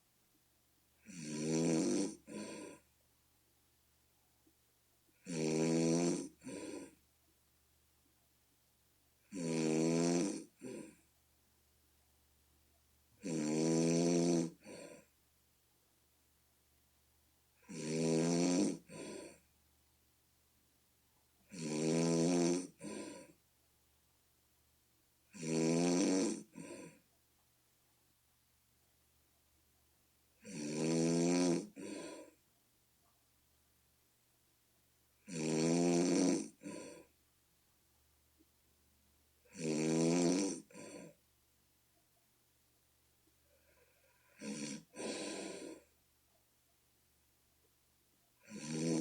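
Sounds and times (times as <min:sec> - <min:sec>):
person snoring: 0:01.0 - 0:02.9, 0:05.2 - 0:07.0, 0:09.3 - 0:11.0, 0:13.2 - 0:15.1, 0:17.6 - 0:19.5, 0:21.5 - 0:23.4, 0:25.3 - 0:27.0, 0:30.4 - 0:32.4, 0:35.2 - 0:37.1, 0:39.5 - 0:41.2, 0:43.5 - 0:45.9, 0:48.4 - 0:49.0.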